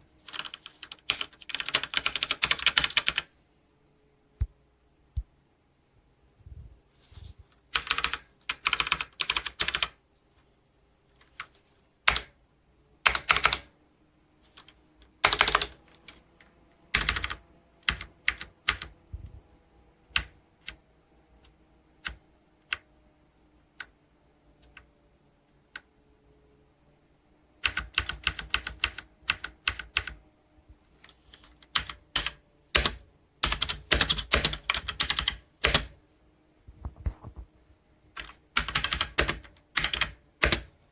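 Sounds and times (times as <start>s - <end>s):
mechanical keyboard typing: 0.2s - 3.3s, 7.7s - 10.0s, 11.2s - 12.3s, 13.0s - 13.7s, 14.5s - 19.0s, 20.1s - 20.8s, 21.4s - 22.8s, 27.6s - 30.2s, 31.0s - 36.0s, 38.2s - 40.8s.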